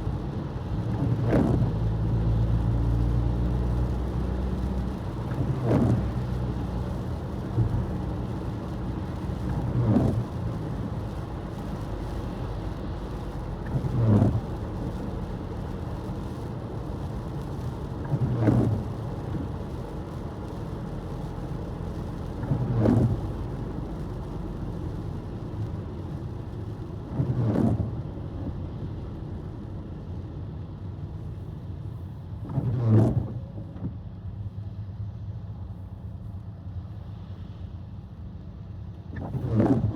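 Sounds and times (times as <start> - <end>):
car engine and road noise: 0.0 - 39.9
windshield wiper sweep: 0.1 - 1.8, 3.6 - 16.4, 17.0 - 28.6, 31.9 - 34.1, 39.2 - 39.9.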